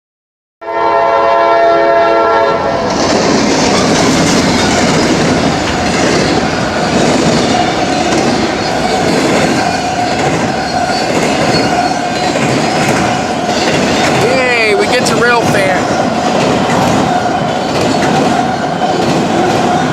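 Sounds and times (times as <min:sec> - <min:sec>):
locomotive horn chord: 0:00.6 - 0:03.0
train rumbling past: 0:00.7 - 0:19.9
wheels clattering over rails: 0:02.8 - 0:19.9.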